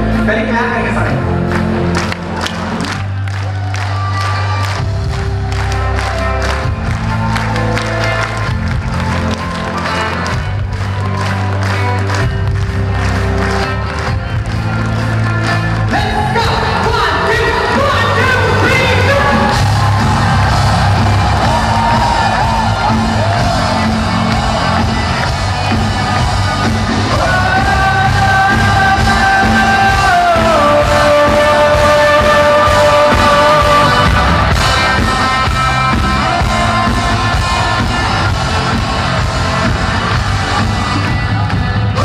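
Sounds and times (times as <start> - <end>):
crowd yelling and cheering: 0.0 - 42.0
person singing over bass beat: 26.0 - 42.0.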